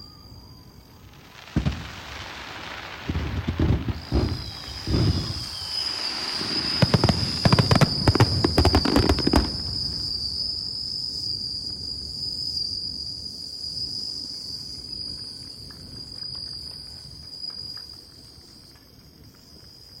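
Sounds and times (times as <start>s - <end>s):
crickets trilling: 0.0s - 20.0s
fireworks cracking and booming: 0.8s - 12.6s.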